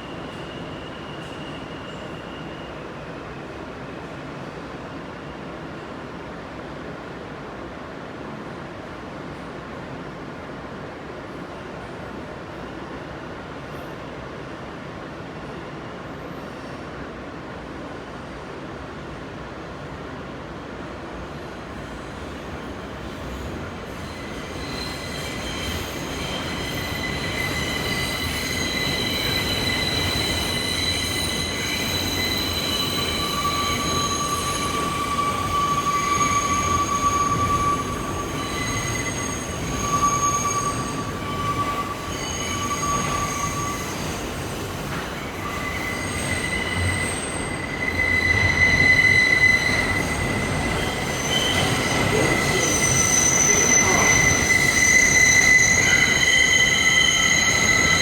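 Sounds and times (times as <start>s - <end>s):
subway train rumble: 0.0s - 58.0s
high wheel squeals: 22.0s - 58.0s.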